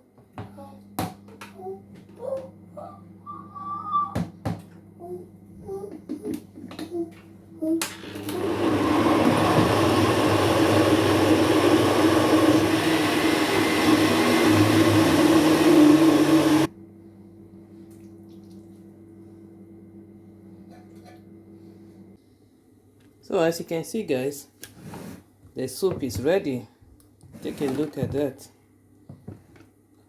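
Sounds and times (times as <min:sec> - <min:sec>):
electric blender running: 0:07.8 - 0:16.7.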